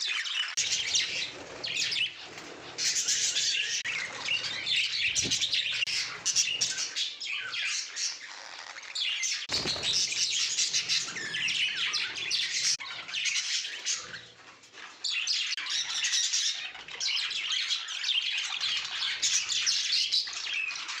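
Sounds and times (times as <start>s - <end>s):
budgerigars chattering: 0.1s - 14.4s.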